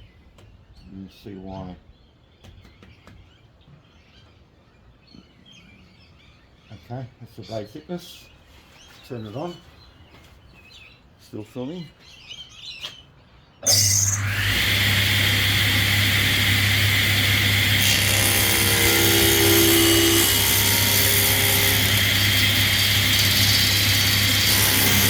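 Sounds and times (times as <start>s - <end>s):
table saw motor running: 13.7s - 25.0s.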